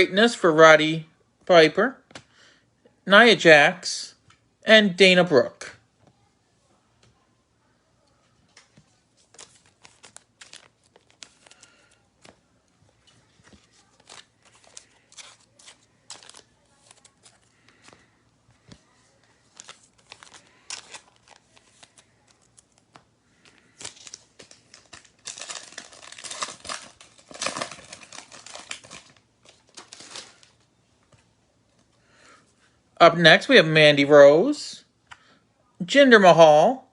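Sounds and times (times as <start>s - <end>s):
cards being handled: 8.4s - 31.9s
wrapper tearing and crinkling: 9.2s - 12.4s, 13.3s - 18.0s, 19.4s - 30.6s.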